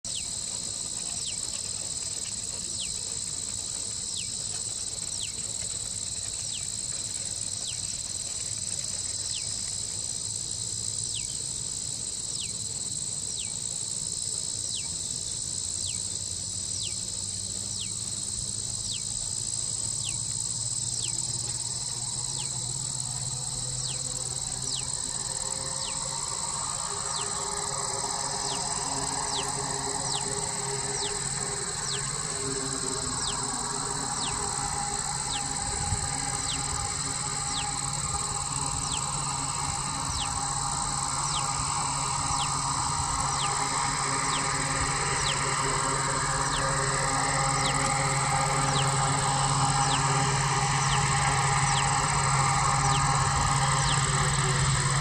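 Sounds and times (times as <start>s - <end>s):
crickets and insects chirping: 0.0s - 55.0s
high falling chirp: 23.9s - 55.0s.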